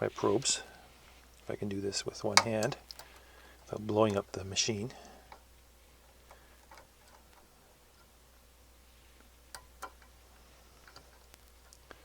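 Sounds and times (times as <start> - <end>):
low steady hum: 0.0 - 12.0
test probe clips clicking: 2.3 - 4.2.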